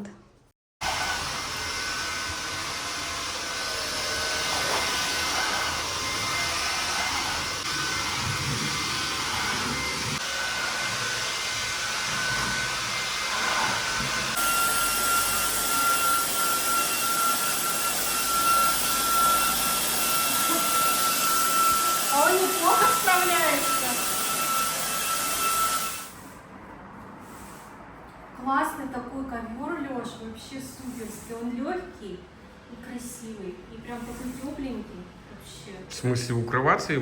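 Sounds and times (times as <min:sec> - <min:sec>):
floor washer suction and motor: 0:00.8 - 0:26.5.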